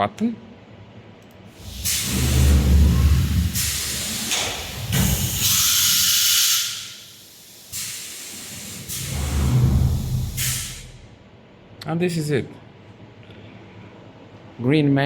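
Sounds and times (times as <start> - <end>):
low motor hum: 1.6 - 6.0, 7.1 - 11.8
compressed air hissing: 1.6 - 11.2.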